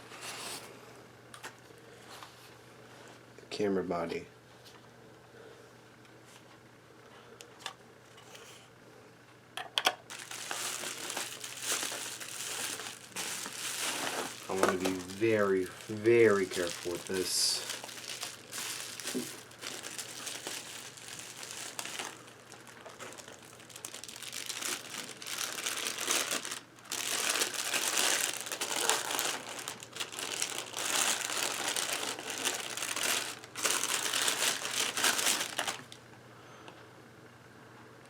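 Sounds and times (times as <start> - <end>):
packaging wrapping crinkling: 10.1 - 36.0.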